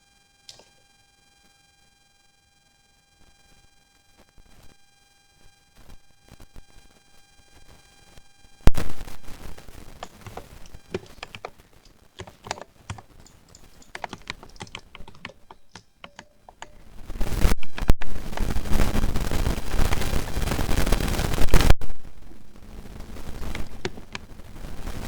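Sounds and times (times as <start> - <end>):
mechanical keyboard typing: 10.0 - 18.8, 23.4 - 24.3.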